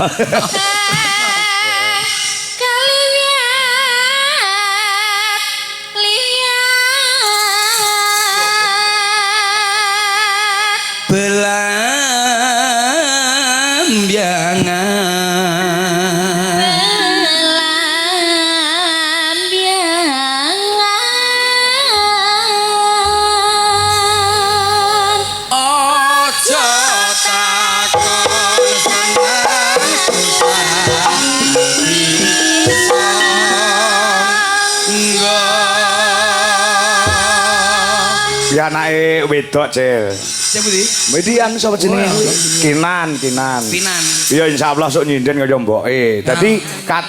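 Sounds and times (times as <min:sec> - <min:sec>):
woman singing with vibrato: 0:00.0 - 0:11.1, 0:15.3 - 0:38.6
low bass notes: 0:23.0 - 0:25.7.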